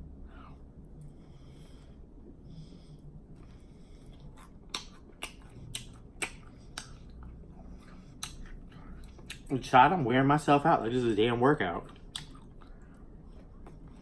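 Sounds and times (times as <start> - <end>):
open-mouthed chewing with lip smacking: 3.4 - 9.6, 11.7 - 14.0.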